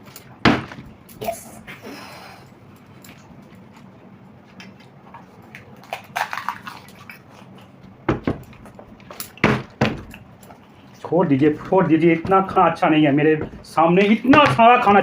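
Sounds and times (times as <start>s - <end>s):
heavy thuds: 11.1s - 15.0s.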